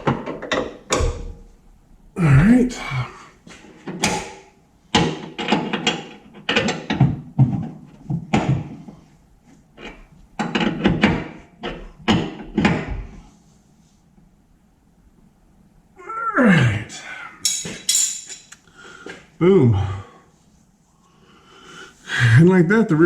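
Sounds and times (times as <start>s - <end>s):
metal tools clanking: 17.4s - 18.6s.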